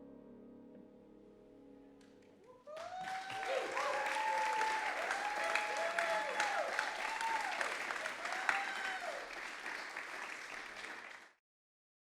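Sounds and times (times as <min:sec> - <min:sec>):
audience applauding: 0:02.5 - 0:11.4.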